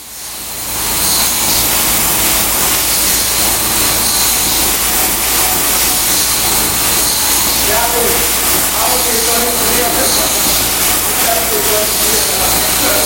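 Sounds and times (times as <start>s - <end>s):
low machine hum: 0.0s - 13.0s
spraying jets hissing: 0.0s - 13.0s.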